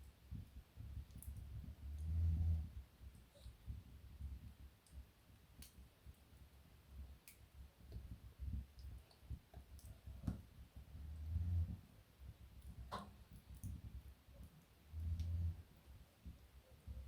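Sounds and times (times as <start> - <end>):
wood fire crackling: 0.0 - 17.0
faint fluttering low rumble: 8.0 - 17.0.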